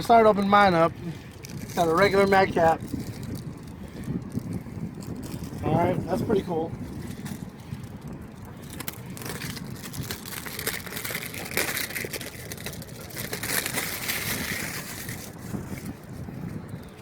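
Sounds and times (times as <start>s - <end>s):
cardboard packaging being torn: 8.8s - 15.4s.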